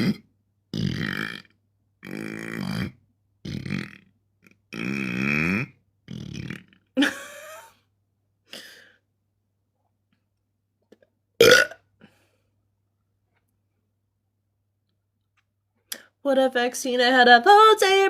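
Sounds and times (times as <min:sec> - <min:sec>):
woman burping: 0:11.4 - 0:11.8.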